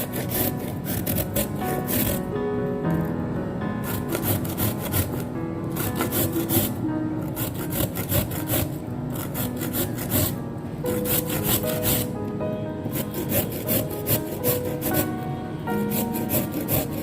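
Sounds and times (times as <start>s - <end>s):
knife cutting on wooden board: 0.0s - 2.2s, 3.9s - 5.2s, 5.8s - 6.8s, 7.4s - 10.4s, 11.0s - 12.1s, 12.9s - 15.0s, 15.9s - 17.0s
soft background music: 0.0s - 17.0s.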